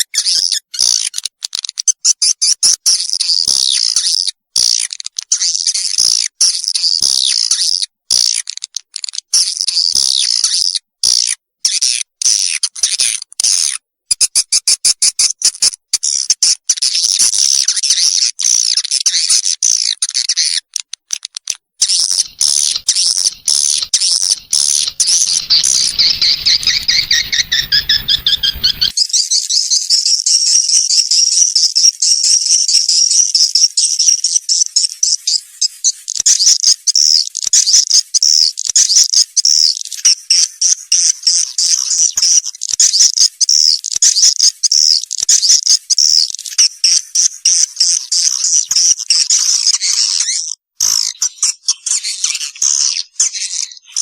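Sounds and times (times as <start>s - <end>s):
high twittering bird chirps: 21.8s - 29.9s.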